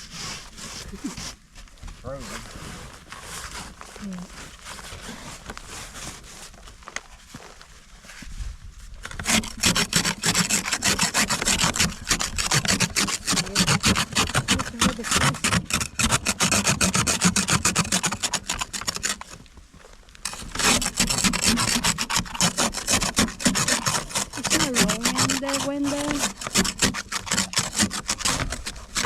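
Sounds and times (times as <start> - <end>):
ice scraper scraping car glass: 9.1 - 19.4, 20.2 - 29.0.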